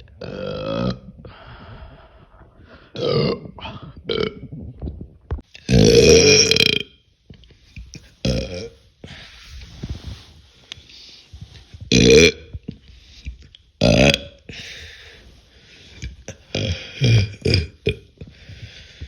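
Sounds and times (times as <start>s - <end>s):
woman burping: 3.0s - 4.5s, 5.6s - 6.9s, 8.2s - 8.8s, 16.4s - 18.1s.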